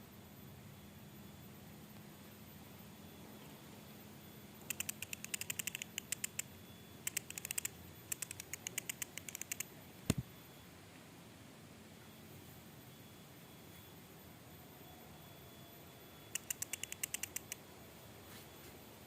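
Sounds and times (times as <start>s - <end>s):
quick sharp clicks: 4.6s - 6.5s, 7.1s - 10.2s, 16.4s - 17.6s.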